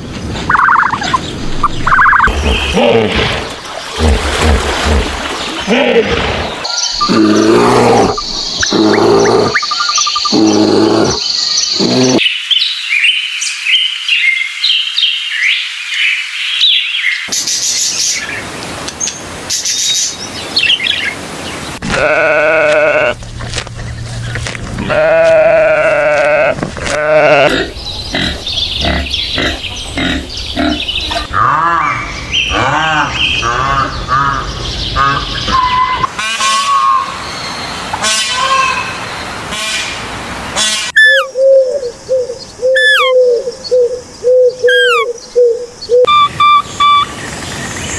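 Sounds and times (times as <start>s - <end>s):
short animal chirps and calls: 0.5s - 1.2s, 1.8s - 2.3s, 40.9s - 41.4s, 42.7s - 43.2s, 44.7s - 45.1s
high chirping: 0.5s - 2.8s, 6.9s - 12.2s, 40.9s - 41.4s, 42.6s - 43.3s, 44.6s - 45.2s, 45.9s - 47.4s
goats or sheep bleating: 21.8s - 23.2s, 24.8s - 27.6s.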